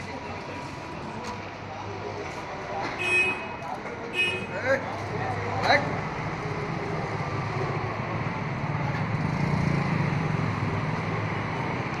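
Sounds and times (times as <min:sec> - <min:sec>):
vehicle engine droning: 0:04.6 - 0:12.0.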